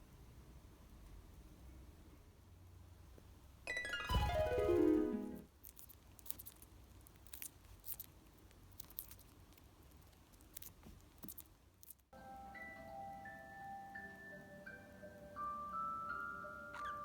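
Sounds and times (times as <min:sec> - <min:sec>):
low room hum: 0:00.0 - 0:17.0
chiming music: 0:03.7 - 0:05.5, 0:12.2 - 0:17.0.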